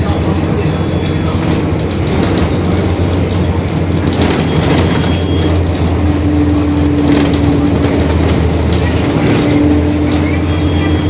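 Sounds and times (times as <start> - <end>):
body rattles and clicks: 0.0 - 11.0
bus diesel engine drone: 0.0 - 11.0
steady mechanical whine: 0.0 - 11.0.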